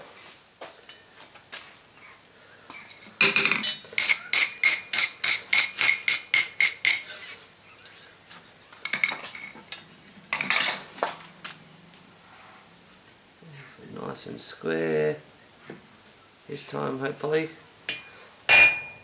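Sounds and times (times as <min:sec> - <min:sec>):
metal scrapes and knocks: 0:02.9 - 0:07.3
hammer striking steel on anvil: 0:17.9 - 0:19.0.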